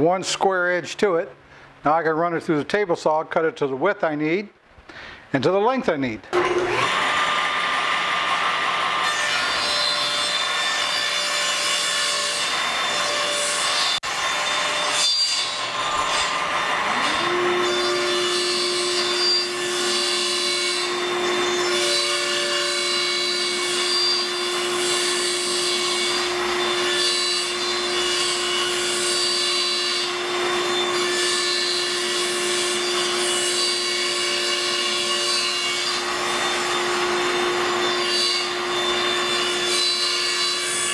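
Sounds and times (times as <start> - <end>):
saw motor whining: 6.3 - 11.5, 12.4 - 40.9
table saw cutting wood: 6.3 - 40.9.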